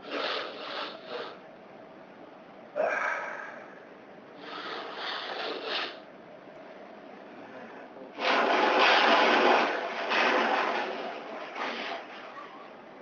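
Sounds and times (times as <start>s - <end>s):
man gasping breaths: 2.8s - 5.0s.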